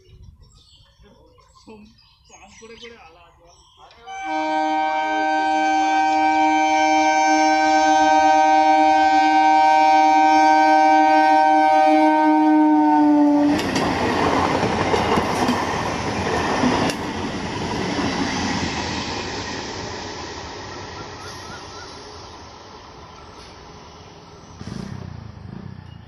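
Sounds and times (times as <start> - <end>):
train horn: 4.1 - 13.8
train wheels clattering on rails: 13.5 - 22.1.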